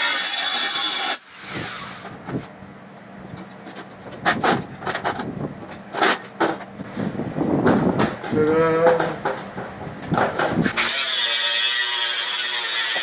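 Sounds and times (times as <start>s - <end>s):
power tool on metal: 0.0s - 2.2s, 10.7s - 13.0s.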